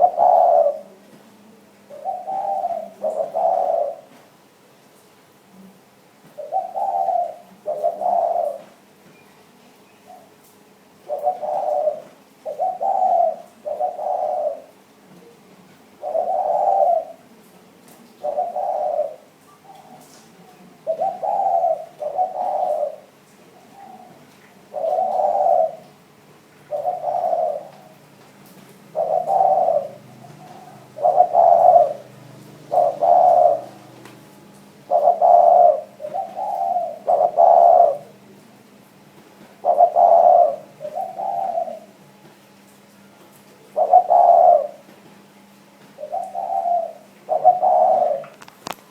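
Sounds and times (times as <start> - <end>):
dove cooing: 0.0 - 4.4, 6.3 - 8.9, 9.9 - 38.6, 39.4 - 42.4, 43.6 - 45.0, 45.8 - 48.9.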